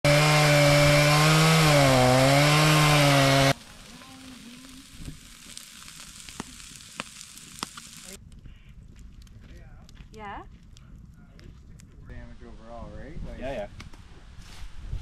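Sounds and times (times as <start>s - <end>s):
chainsaw cutting at full throttle: 0.0s - 3.6s
sharp pops: 3.8s - 8.2s.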